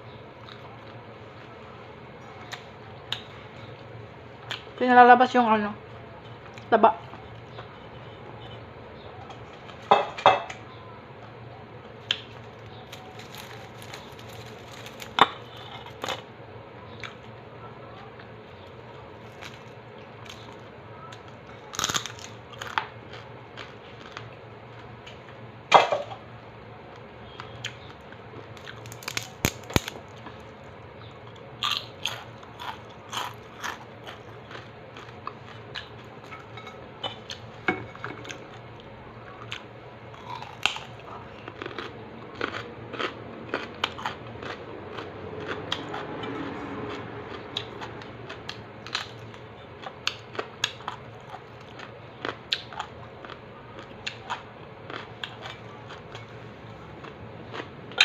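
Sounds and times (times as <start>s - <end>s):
crunching and chewing crispy food: 0.1s - 4.8s, 11.1s - 25.4s, 27.0s - 58.0s.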